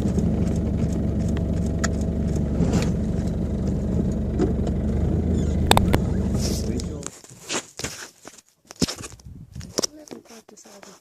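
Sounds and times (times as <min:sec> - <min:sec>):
car engine running: 0:00.0 - 0:07.1.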